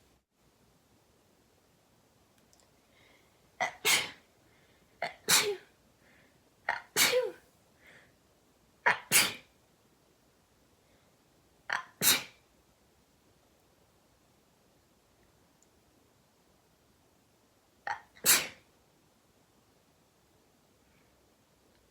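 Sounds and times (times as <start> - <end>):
person sneezing: 3.6 - 4.2, 5.0 - 5.7, 6.7 - 7.4, 8.9 - 9.5, 11.7 - 12.4, 17.9 - 18.6.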